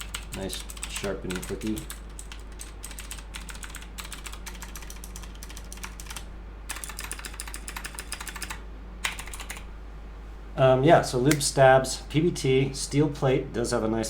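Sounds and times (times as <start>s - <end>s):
mechanical keyboard typing: 0.0s - 9.6s.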